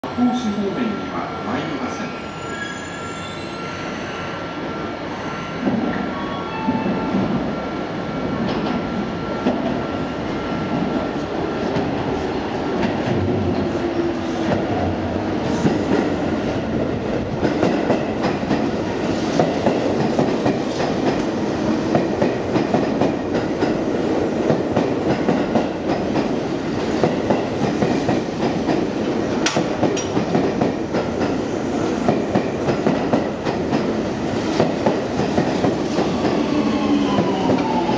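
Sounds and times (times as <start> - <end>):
train wheels clicking over rail joints: 29.4 - 31.4.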